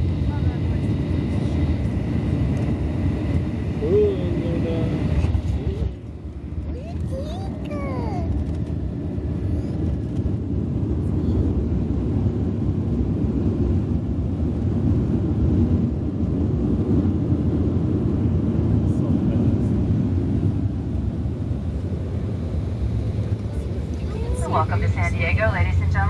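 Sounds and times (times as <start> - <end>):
jet engine rumble inside cabin: 0.0 - 26.0.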